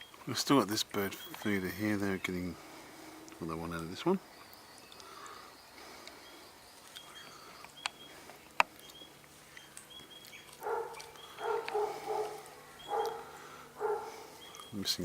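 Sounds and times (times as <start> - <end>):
small birds chirping: 0.0 - 15.0
short lower-pitched bird calls: 4.2 - 14.9.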